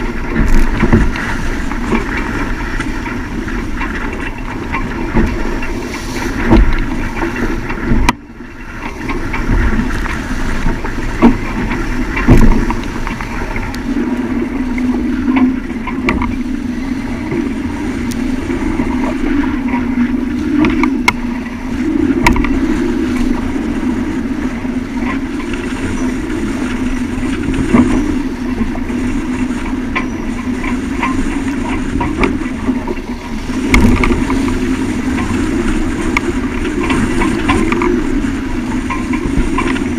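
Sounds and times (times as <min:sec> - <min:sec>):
yacht rushing in strong wind: 0:00.0 - 0:39.9.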